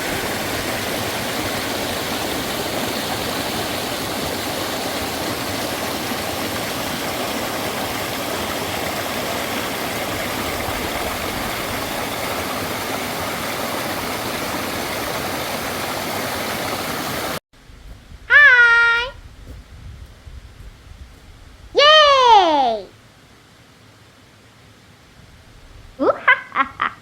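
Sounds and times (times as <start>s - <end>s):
stream rushing: 0.0s - 17.4s.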